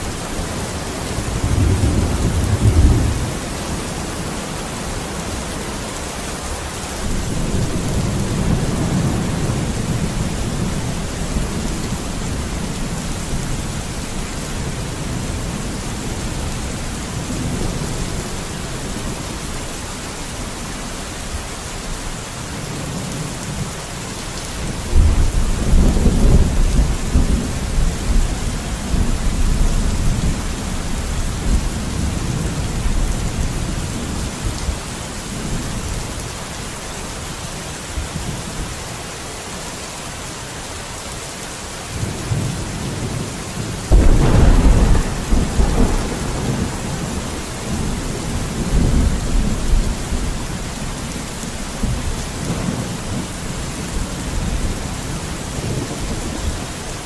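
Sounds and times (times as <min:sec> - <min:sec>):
rolling thunder: 0:00.0 - 0:04.3, 0:42.0 - 0:56.4
heavy rain: 0:00.0 - 0:57.0
loud thunderclap: 0:01.3 - 0:03.5, 0:43.9 - 0:50.4.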